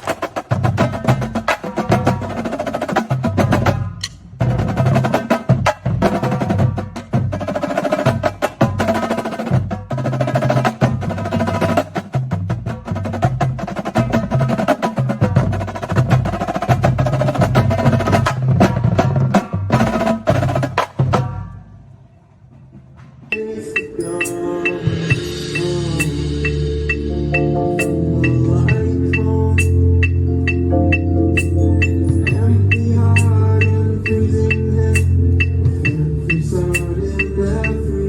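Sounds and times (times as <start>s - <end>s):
rapid snare drum strokes: 0.0s - 21.5s
pitched bass drums: 0.0s - 21.8s, 23.2s - 38.0s.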